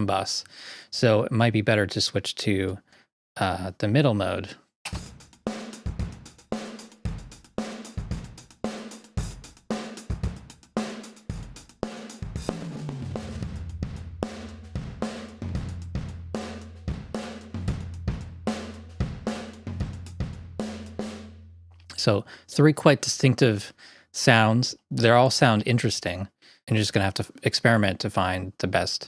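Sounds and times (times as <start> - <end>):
drum kit groove: 4.9 - 22.3
steady low tone: 13.2 - 22.0.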